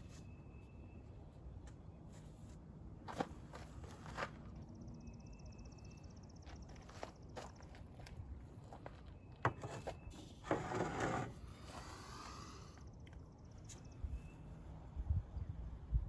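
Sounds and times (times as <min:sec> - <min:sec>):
rough scrape or rustle: 0:09.6 - 0:12.6.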